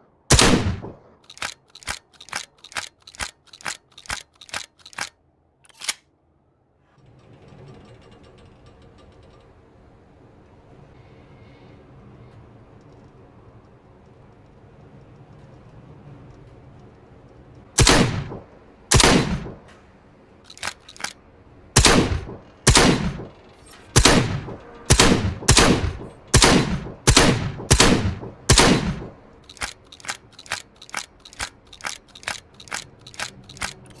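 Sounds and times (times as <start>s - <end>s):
shotgun shots: 0.3s - 1.5s, 17.8s - 19.6s, 21.8s - 23.3s, 24.0s - 29.7s.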